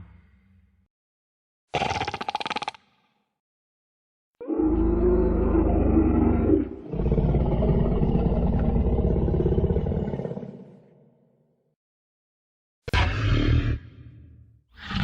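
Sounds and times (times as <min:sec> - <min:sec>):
dinosaur roars: 0:04.4 - 0:11.0, 0:12.9 - 0:14.0.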